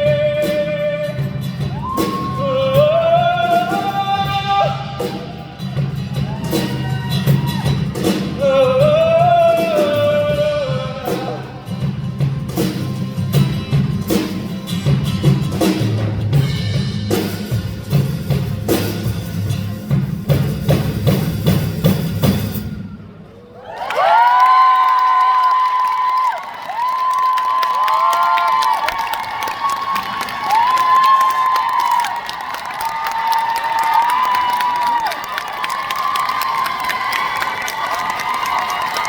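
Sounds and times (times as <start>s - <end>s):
drum hits: 0.0s - 22.8s
pop-rock band playing: 0.0s - 22.9s.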